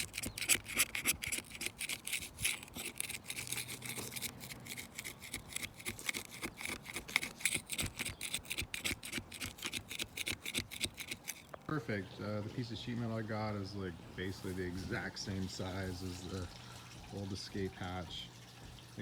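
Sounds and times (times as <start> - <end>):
rapid scratchy scraping strokes: 0.0 - 11.6, 14.3 - 16.4.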